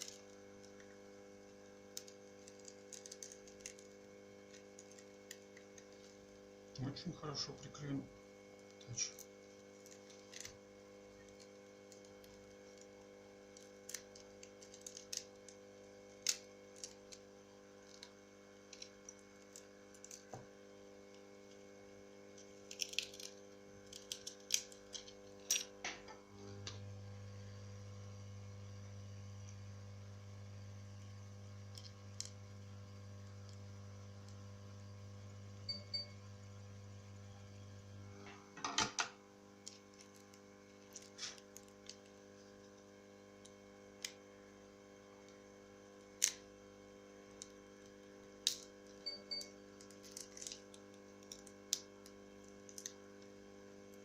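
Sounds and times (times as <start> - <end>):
electrical hum: 0.0 - 54.0
small tools clicking and tapping: 2.0 - 6.2, 22.4 - 26.2.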